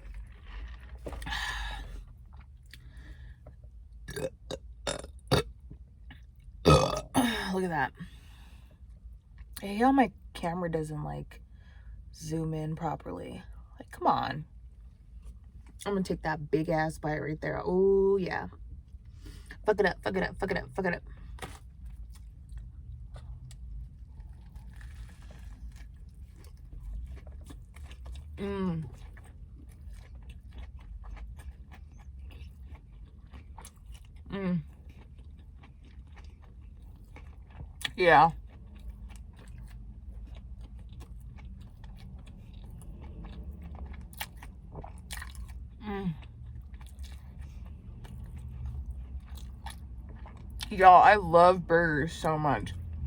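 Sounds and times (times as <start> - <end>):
person chewing food: 0.0 - 7.1, 21.2 - 50.7
steady low hum: 0.0 - 53.0.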